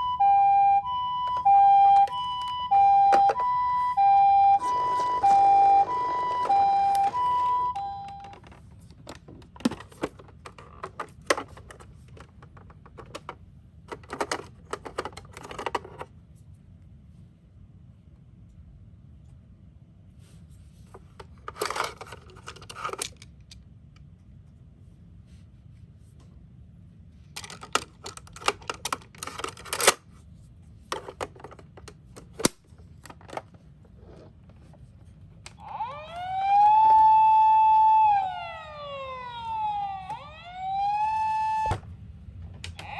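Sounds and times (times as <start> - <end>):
toy siren hi-lo: 0.0 - 8.4, 35.5 - 41.8
toy cars clicking and clattering: 7.8 - 16.1, 21.2 - 23.6, 27.4 - 30.0.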